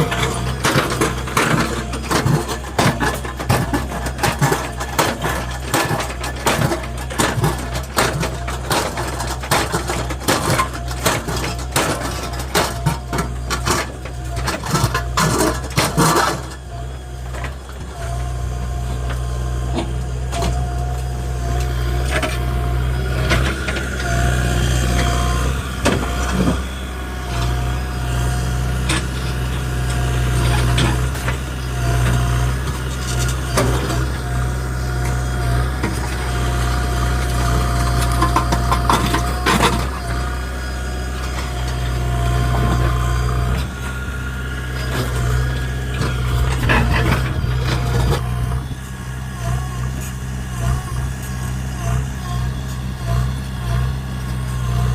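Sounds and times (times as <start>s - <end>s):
metal clanks and knocks: 0.0s - 16.6s, 28.8s - 40.4s, 44.8s - 48.3s
diesel engine running: 0.0s - 54.9s.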